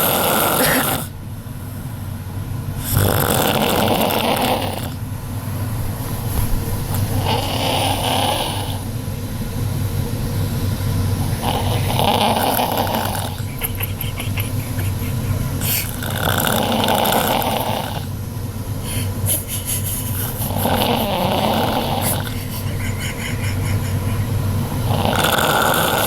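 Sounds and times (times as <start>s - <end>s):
woman snoring loudly: 0.0s - 1.1s, 2.8s - 5.0s, 7.1s - 8.9s, 11.2s - 13.7s, 15.6s - 18.1s, 20.2s - 22.9s, 23.5s - 26.0s
low hum: 8.8s - 25.0s.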